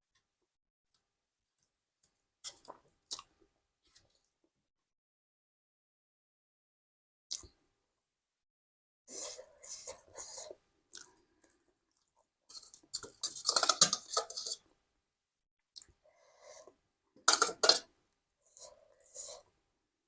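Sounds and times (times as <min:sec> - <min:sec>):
close chewing and eating: 0:00.9 - 0:04.4, 0:09.1 - 0:14.6.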